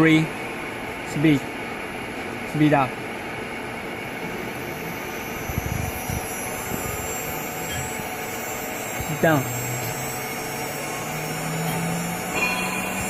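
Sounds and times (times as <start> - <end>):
router spindle motor whirring: 4.3 - 13.0.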